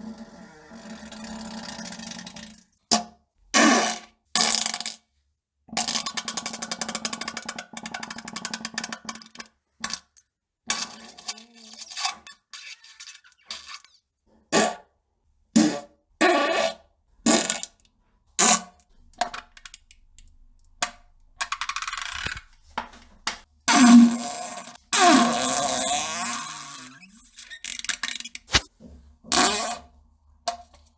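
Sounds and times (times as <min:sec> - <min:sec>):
farting sounds: 0:00.4 - 0:02.6, 0:28.4 - 0:28.7.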